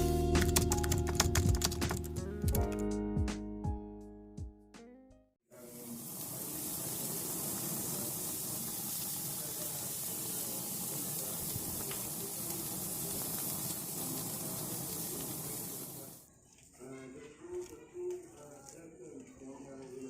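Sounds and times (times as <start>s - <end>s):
steady hissing: 5.5s - 16.2s.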